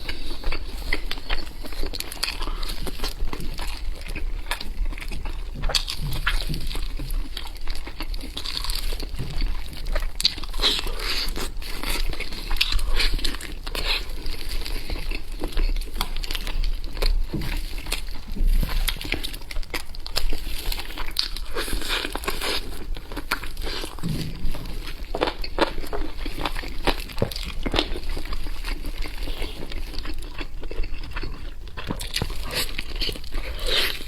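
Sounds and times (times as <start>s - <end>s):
chewing with wet clicks: 0.0s - 34.0s.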